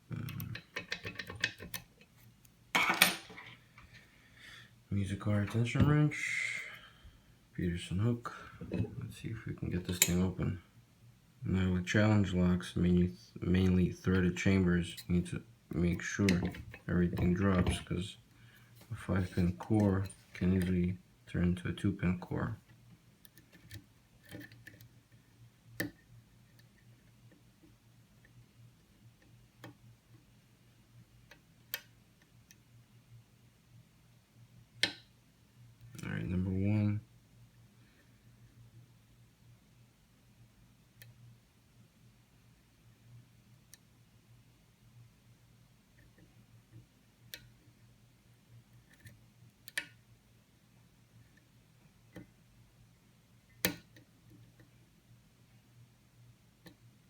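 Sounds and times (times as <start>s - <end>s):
low steady hum: 0.0s - 57.0s.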